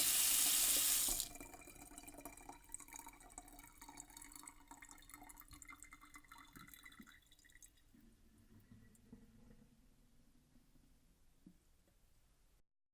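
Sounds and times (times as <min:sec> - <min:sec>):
water dripping and trickling in sink: 0:00.0 - 0:07.9.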